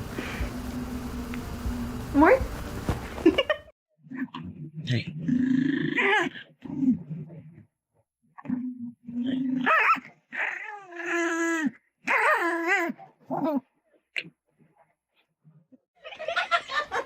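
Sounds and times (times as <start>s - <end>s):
dog growling: 4.1s - 7.6s.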